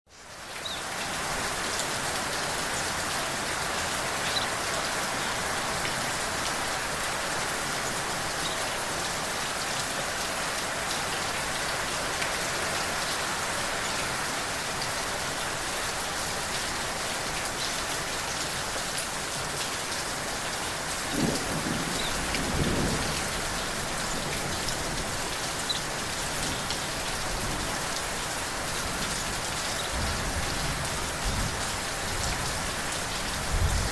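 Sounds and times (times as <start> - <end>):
steady rain falling: 0.1 - 33.9
low roll of thunder: 21.1 - 23.5.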